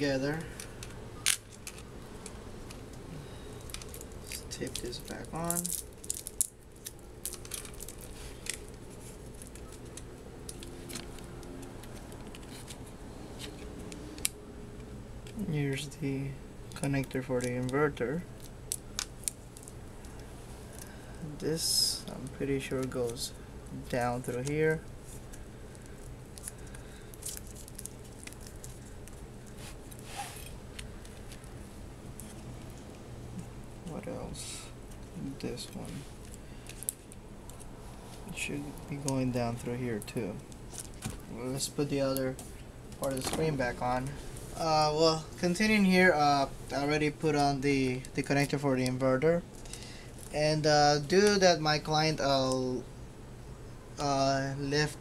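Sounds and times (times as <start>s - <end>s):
low steady hum: 0.0s - 55.0s
hands handling parts and tape: 0.2s - 15.5s, 22.1s - 33.5s, 34.8s - 44.6s
plastic parts clicking and rustling: 0.5s - 3.0s, 3.6s - 14.3s.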